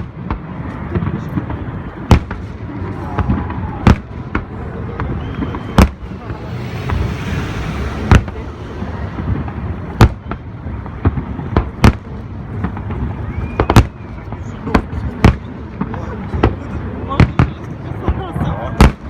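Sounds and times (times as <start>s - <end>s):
small firework pops: 0.0s - 7.0s, 9.4s - 19.0s
continuous rumble: 0.0s - 19.0s
rising hiss: 6.0s - 9.3s.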